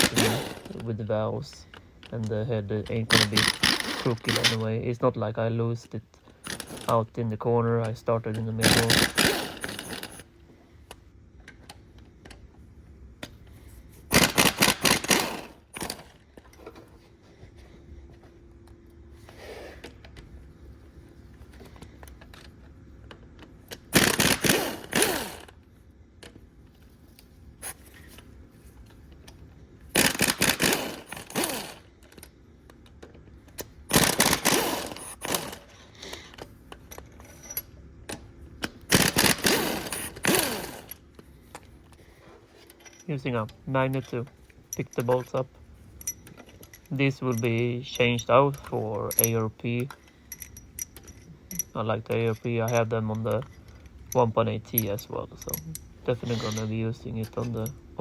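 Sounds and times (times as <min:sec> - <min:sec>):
impact wrench hammering: 0:00.0 - 0:00.8, 0:03.1 - 0:04.6, 0:08.6 - 0:10.2, 0:14.1 - 0:16.0, 0:23.9 - 0:25.5, 0:30.0 - 0:31.8, 0:33.9 - 0:35.6, 0:38.9 - 0:40.9.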